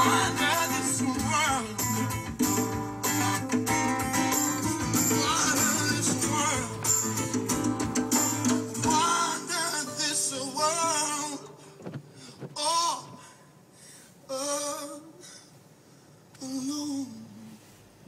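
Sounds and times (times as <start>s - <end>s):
song on car radio: 0.0s - 13.5s.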